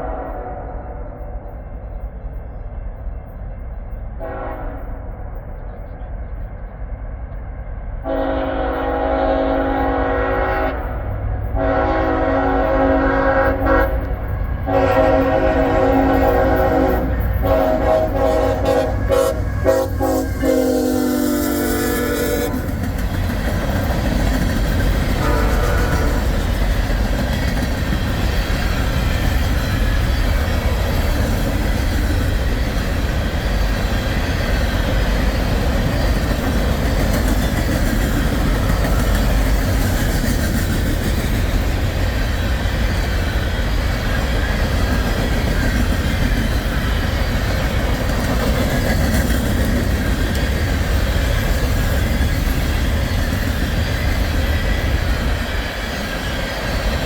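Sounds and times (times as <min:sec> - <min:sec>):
freight cars rumbling and rattling: 0:21.8 - 0:57.0.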